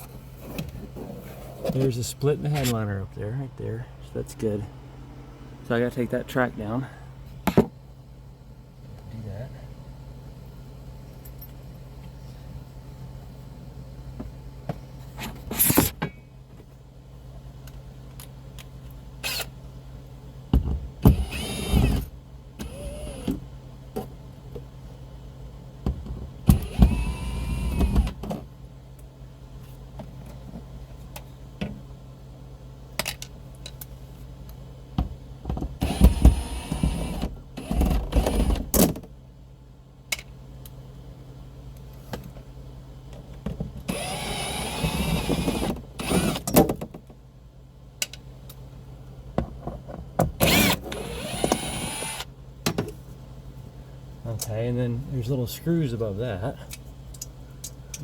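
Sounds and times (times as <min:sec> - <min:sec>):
steady low hum: 0:00.0 - 0:58.0
cordless drill motor whine: 0:21.1 - 0:22.0, 0:22.6 - 0:23.4, 0:26.5 - 0:28.1, 0:35.8 - 0:38.5, 0:43.9 - 0:46.4, 0:50.4 - 0:52.3.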